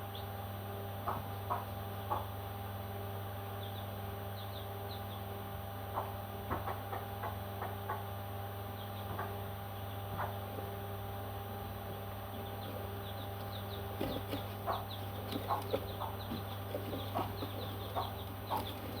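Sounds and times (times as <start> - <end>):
electrical hum: 0.0 - 19.0
baby parrots chirping: 12.3 - 19.0.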